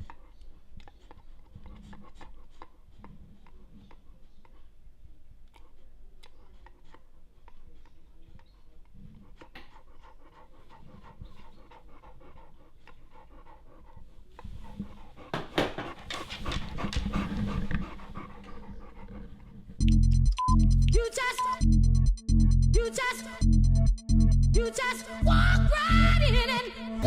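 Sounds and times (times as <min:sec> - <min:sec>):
dog panting: 0:00.0 - 0:20.0.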